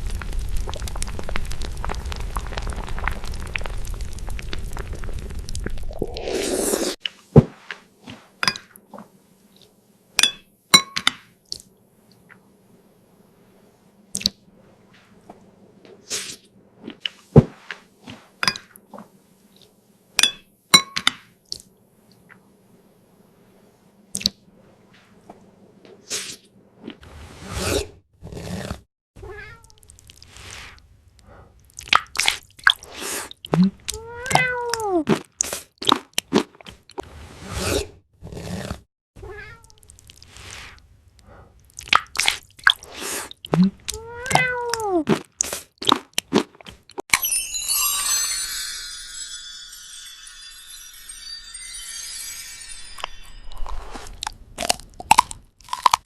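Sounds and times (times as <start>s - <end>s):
cat meowing: 34.0s - 34.9s, 44.0s - 44.9s
crunching bites: 53.6s - 56.0s.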